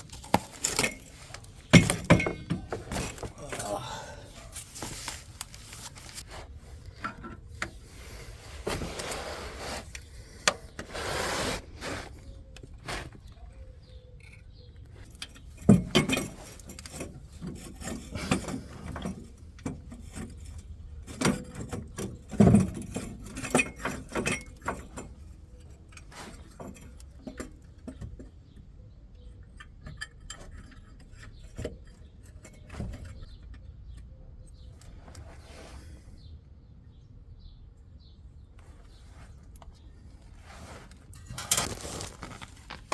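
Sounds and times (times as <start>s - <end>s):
metal tools clinking and knocking: 0.0s - 5.2s, 14.0s - 28.4s.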